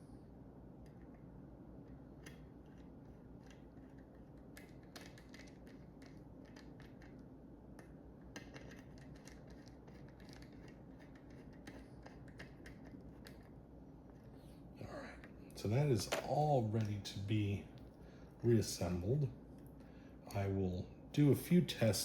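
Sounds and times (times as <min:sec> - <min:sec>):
low room hum: 0:00.0 - 0:22.0
small clicks and scrapes of hands: 0:00.8 - 0:14.6.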